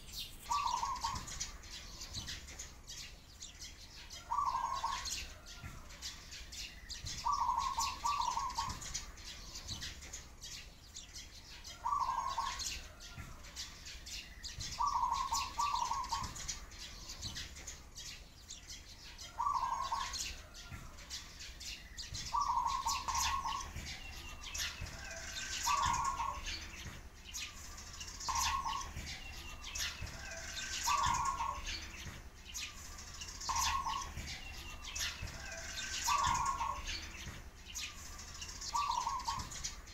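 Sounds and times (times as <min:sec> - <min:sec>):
sparrows chirping: 0:00.0 - 0:39.9
dove cooing: 0:00.4 - 0:02.3, 0:04.2 - 0:06.0, 0:07.1 - 0:09.7, 0:11.7 - 0:13.2, 0:14.6 - 0:16.6, 0:19.3 - 0:21.1, 0:22.2 - 0:26.8, 0:28.3 - 0:32.0, 0:32.9 - 0:37.3, 0:38.1 - 0:39.8.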